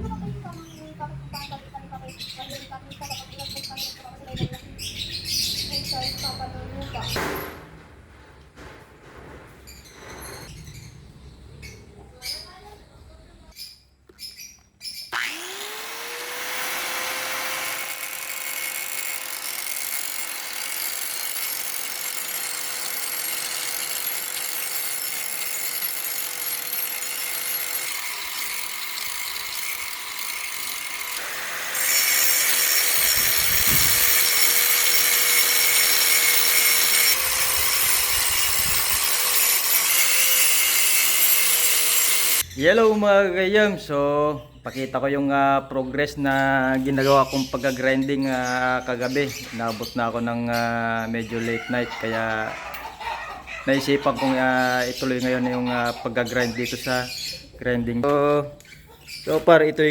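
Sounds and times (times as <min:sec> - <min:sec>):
electric grinder grinding metal: 0:15.2 - 0:42.4.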